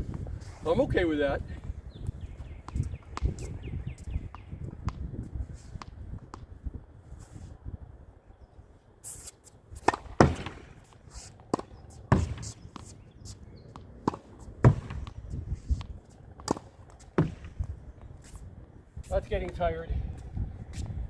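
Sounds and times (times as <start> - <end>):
racket striking tennis ball: 5.7 - 6.5, 9.8 - 13.2, 13.8 - 17.7
ball bouncing on court: 9.8 - 10.7, 11.5 - 12.9, 13.8 - 15.3, 16.4 - 17.7
ball thudding against wall: 9.9 - 10.7, 11.5 - 12.5, 14.1 - 15.2, 16.4 - 17.6.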